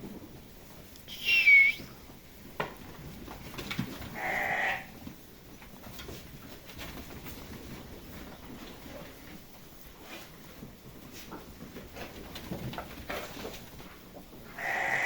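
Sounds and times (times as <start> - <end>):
lamb bleating: 4.2 - 4.9, 14.6 - 15.0.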